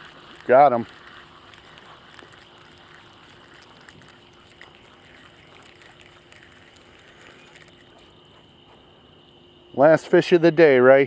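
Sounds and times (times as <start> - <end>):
high-pitched insect drone: 0.0 - 11.0
low steady hum: 0.0 - 11.0.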